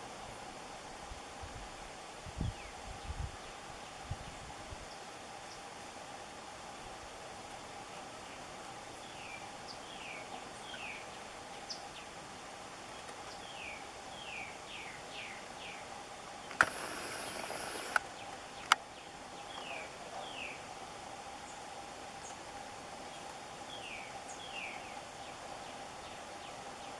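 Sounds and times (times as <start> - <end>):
faint hum: 16.5 - 18.8
sharp clicks: 16.5 - 18.8
small birds chirping: 16.5 - 20.5.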